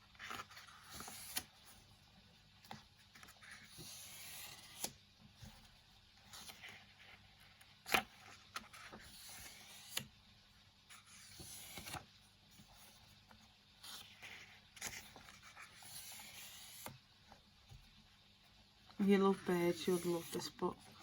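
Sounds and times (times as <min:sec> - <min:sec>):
paper pages rustling: 0:10.9 - 0:17.4.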